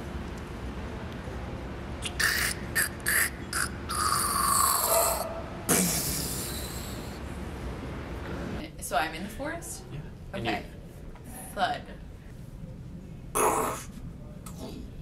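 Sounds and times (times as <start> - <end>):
person making mouth sound effect: 2.0 - 7.2, 13.4 - 14.9.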